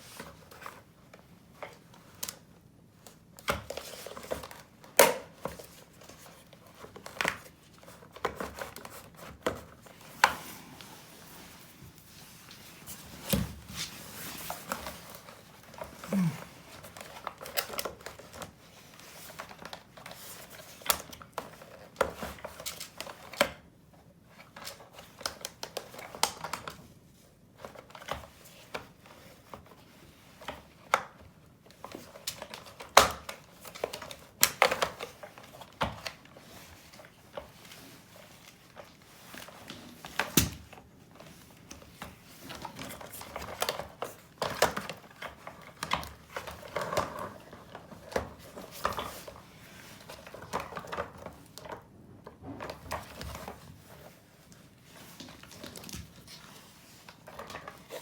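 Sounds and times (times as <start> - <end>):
plastic parts clicking and rustling: 30.4 - 51.8, 52.6 - 58.0.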